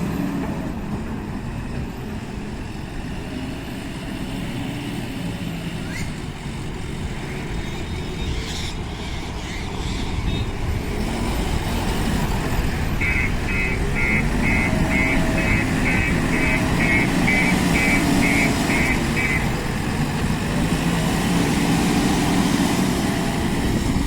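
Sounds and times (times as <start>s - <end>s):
diesel engine running: 0.0s - 24.0s
reversing alarm beeping: 13.0s - 19.6s.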